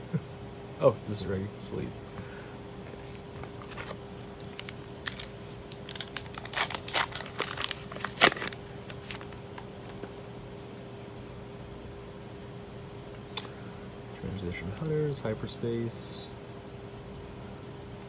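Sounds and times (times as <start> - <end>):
wrapper crinkling and tearing: 3.4 - 10.1.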